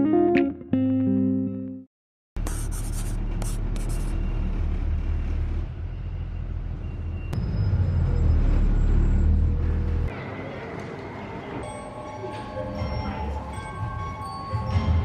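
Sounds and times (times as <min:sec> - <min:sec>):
guitar music: 0:00.0 - 0:01.9
moving vehicle rumble: 0:03.0 - 0:11.4.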